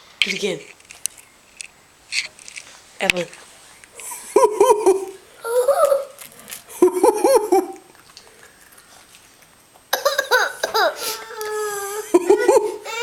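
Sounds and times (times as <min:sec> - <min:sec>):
young child giggling: 0:04.3 - 0:06.2, 0:06.8 - 0:07.8, 0:09.9 - 0:13.0.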